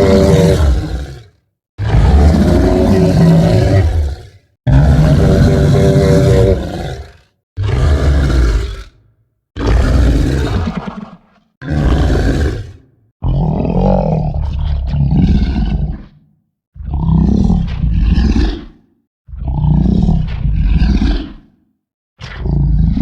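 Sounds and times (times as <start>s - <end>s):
low dinosaur roars: 0.0s - 9.0s, 9.6s - 16.2s.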